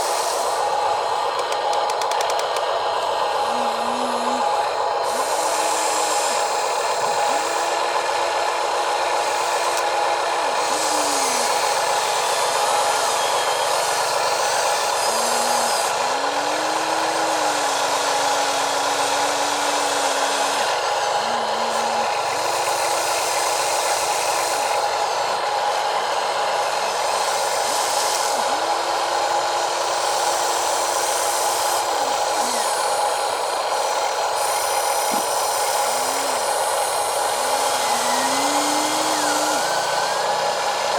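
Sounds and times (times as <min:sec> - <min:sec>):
small electric motors whining: 0:00.0 - 0:40.9
low motor tone: 0:37.4 - 0:40.9.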